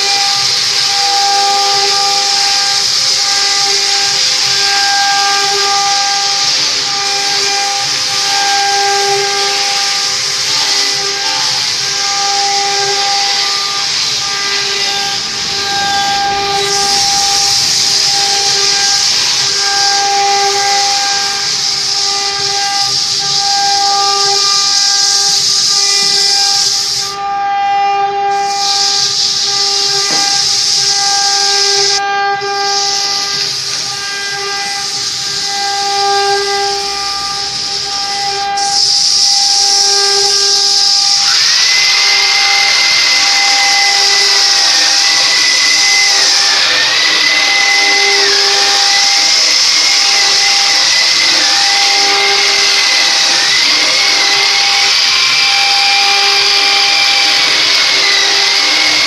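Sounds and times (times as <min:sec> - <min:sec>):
higher whine dipping in pitch: 0:00.0 - 0:27.3
machinery whine: 0:00.0 - 0:59.0
sawmill machinery hiss: 0:00.0 - 0:59.0.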